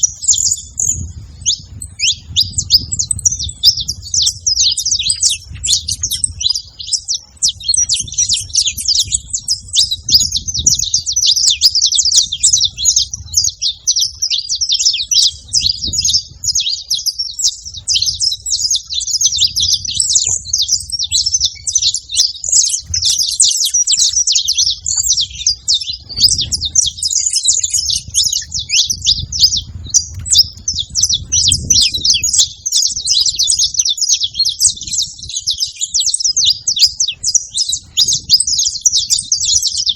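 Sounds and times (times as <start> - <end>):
finches chirping: 0.0 - 39.9.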